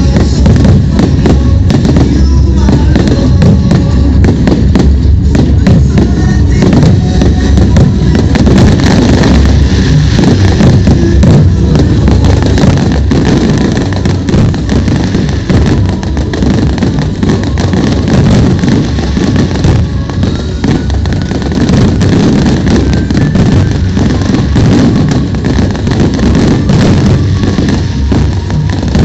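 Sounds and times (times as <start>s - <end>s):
fireworks bangs and crackles: 0.0s - 29.0s.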